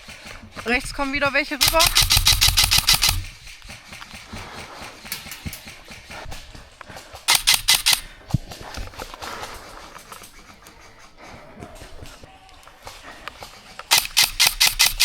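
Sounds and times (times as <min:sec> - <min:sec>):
airsoft gun firing burst: 0:01.6 - 0:03.6, 0:07.3 - 0:08.1, 0:13.9 - 0:15.0
faint clicks and knocks: 0:01.6 - 0:15.0.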